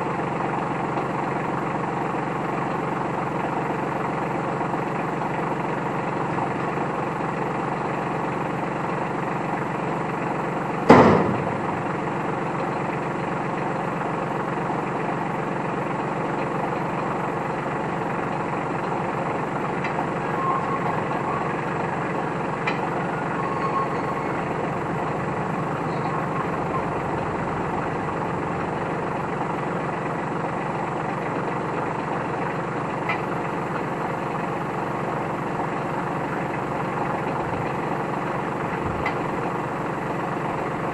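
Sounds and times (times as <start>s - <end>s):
tractor diesel engine running: 0.0s - 40.9s
loud bang: 10.9s - 11.5s.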